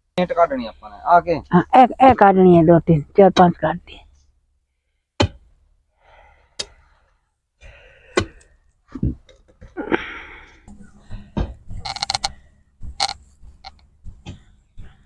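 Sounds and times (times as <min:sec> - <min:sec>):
scraping on brick: 0:11.8 - 0:12.3.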